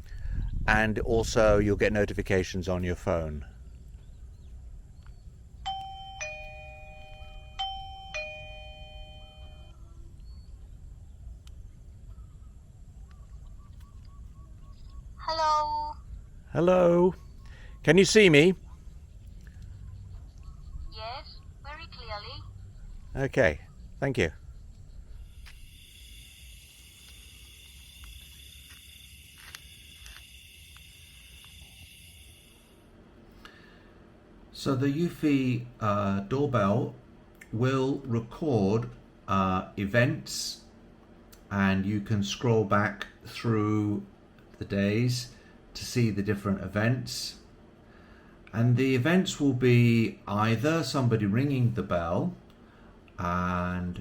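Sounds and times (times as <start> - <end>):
two-note doorbell chime: 5.7 - 9.7
insect chorus buzzing: 22.4 - 33.0.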